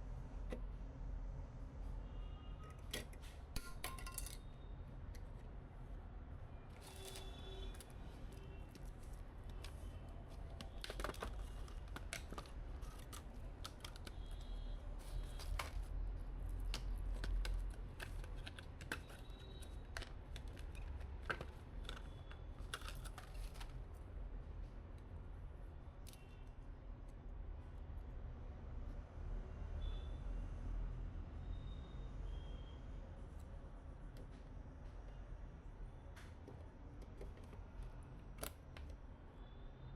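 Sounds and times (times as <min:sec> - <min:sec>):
hands handling computer parts: 0:02.8 - 0:04.5, 0:06.7 - 0:23.9.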